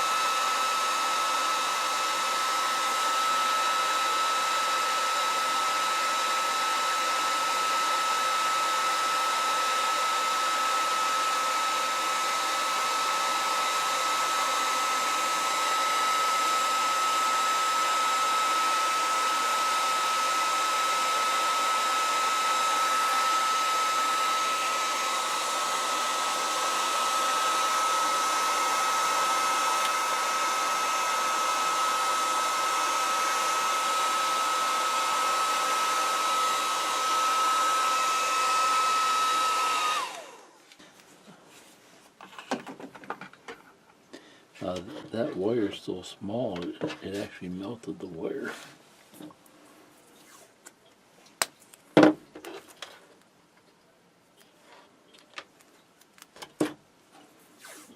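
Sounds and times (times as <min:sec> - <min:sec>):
hair dryer running: 0:00.0 - 0:41.0.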